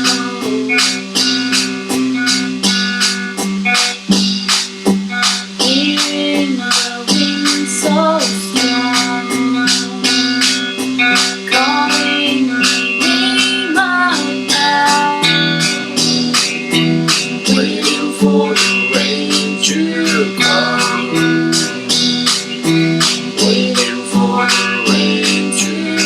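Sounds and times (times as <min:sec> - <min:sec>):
fast percussive beat: 0:00.0 - 0:26.0
plucked acoustic guitar: 0:00.0 - 0:26.0.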